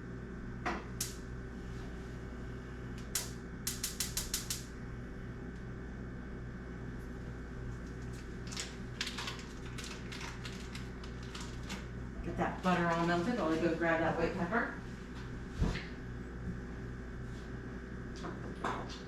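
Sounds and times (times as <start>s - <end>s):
steady low hum: 0.0s - 19.0s
stove igniter clicks: 1.0s - 1.2s, 3.0s - 4.7s.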